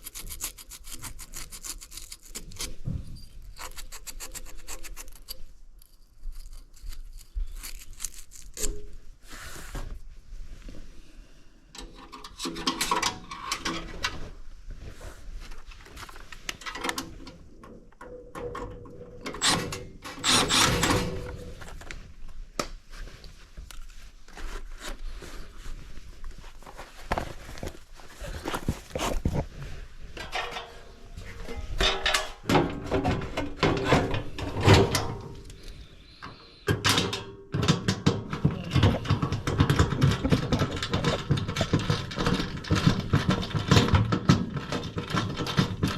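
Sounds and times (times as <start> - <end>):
metal parts knocking and scraping: 0.1 - 5.5, 11.8 - 14.3, 16.0 - 21.9, 30.2 - 45.9.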